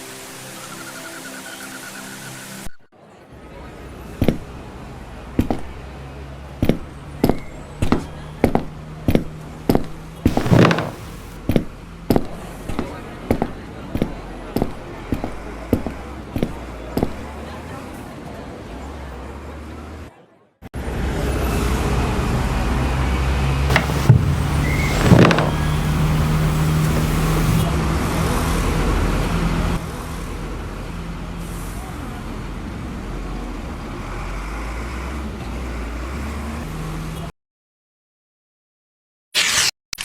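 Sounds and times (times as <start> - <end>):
sharp knocks: 10.3 - 11.4, 23.7 - 27.6.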